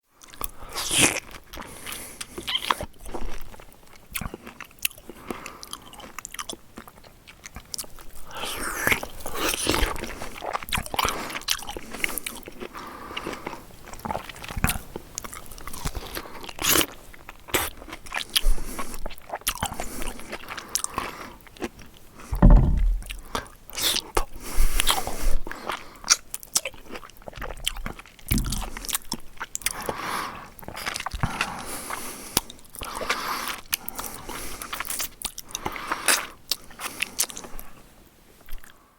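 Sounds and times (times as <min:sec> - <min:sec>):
person chewing and slurping: 0:22.4 - 0:24.0.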